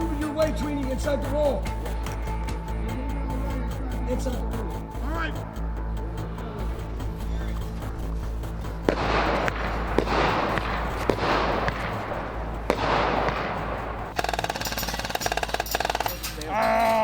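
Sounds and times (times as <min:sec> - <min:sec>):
airsoft gun full-auto burst: 0:08.8 - 0:16.4.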